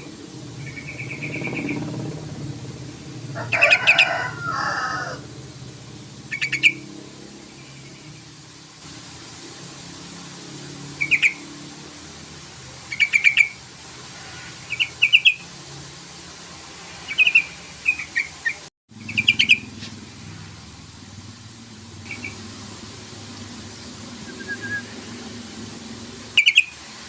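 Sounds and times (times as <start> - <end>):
bird chattering calls: 0.0 - 1.9, 6.3 - 6.9, 11.0 - 11.4, 12.9 - 13.6, 14.7 - 15.5, 17.1 - 19.8, 22.0 - 22.5, 26.3 - 26.8.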